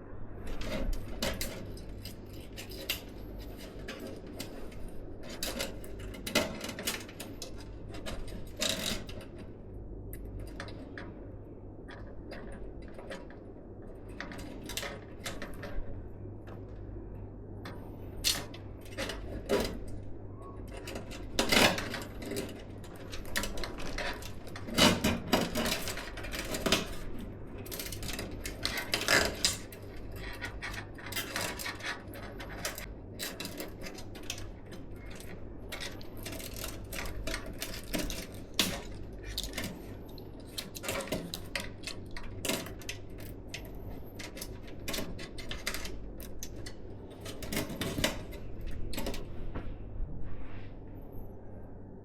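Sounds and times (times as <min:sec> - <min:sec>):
steady low hum: 0:00.0 - 0:52.0
clicks and rattles of computer parts: 0:00.5 - 0:16.8, 0:17.7 - 0:49.3.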